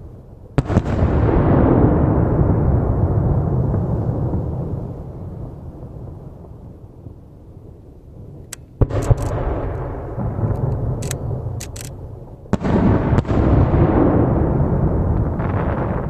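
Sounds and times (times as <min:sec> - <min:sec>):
firework bangs rumbling: 0:00.0 - 0:06.8, 0:07.6 - 0:16.0
firework crackling pops: 0:07.6 - 0:16.0.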